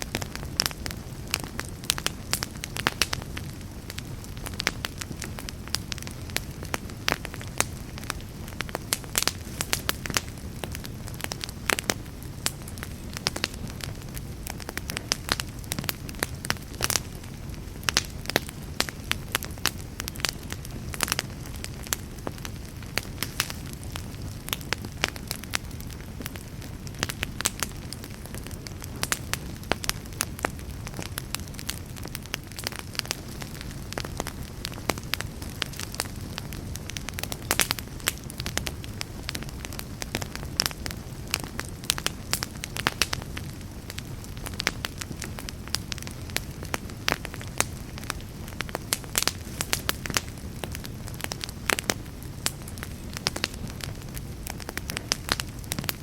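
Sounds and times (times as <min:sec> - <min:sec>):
fire crackling and popping: 0:00.0 - 0:56.0
low rumble of flames: 0:00.0 - 0:56.0.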